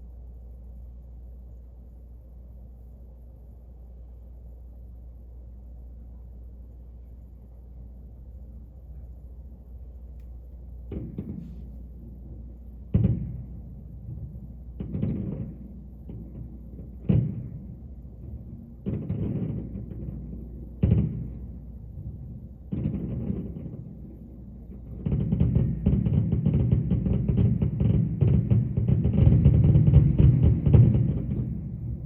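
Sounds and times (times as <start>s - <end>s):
steady low hum: 0.0s - 32.0s
fireworks booming: 10.8s - 32.0s.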